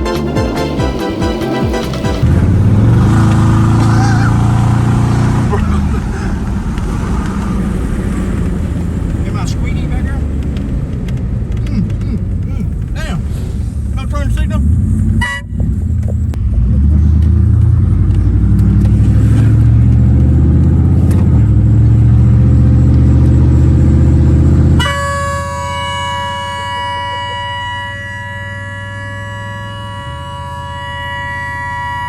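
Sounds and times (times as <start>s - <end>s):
air horn blasting: 0.0s - 6.1s, 15.1s - 16.0s, 24.7s - 32.0s.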